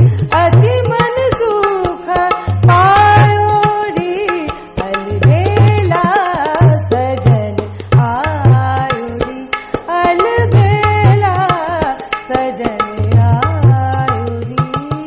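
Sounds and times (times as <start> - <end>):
tabla drumming: 0.0 - 15.0
woman singing classical melody: 0.0 - 15.0.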